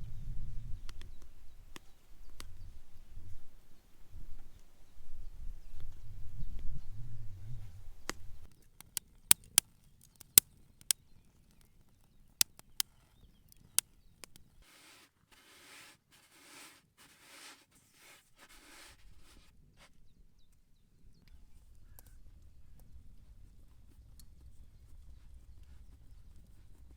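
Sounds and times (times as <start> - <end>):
rolling pin swishing on dough: 14.6 - 19.5.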